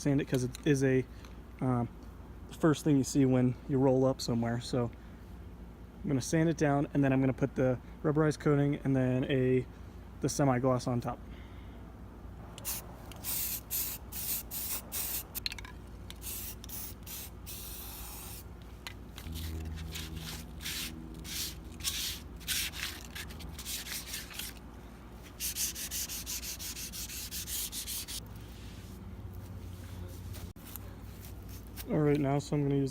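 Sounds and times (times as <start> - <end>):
sandpaper rubbing on steel: 19.2 - 24.6, 25.3 - 28.8.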